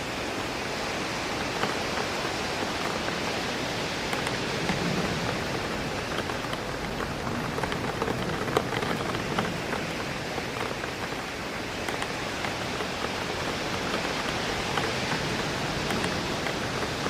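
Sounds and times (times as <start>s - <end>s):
rain hissing: 0.0s - 17.0s
raindrops tapping on glass: 1.0s - 17.0s.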